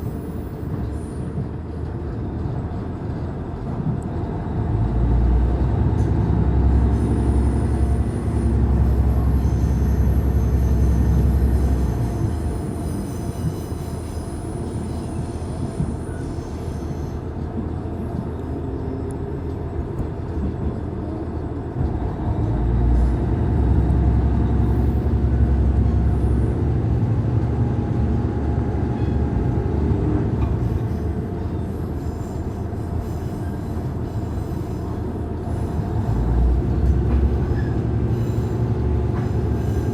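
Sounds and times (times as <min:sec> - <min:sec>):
diesel railcar engine hum: 0:00.0 - 0:39.9
high wheel squeal: 0:07.0 - 0:17.3.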